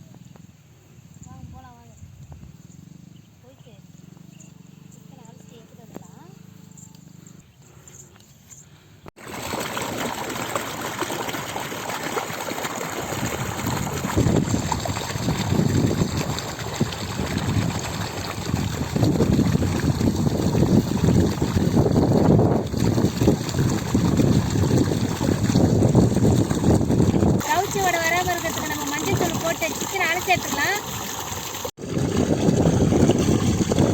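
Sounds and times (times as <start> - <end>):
water sloshing and splashing: 9.2 - 33.9.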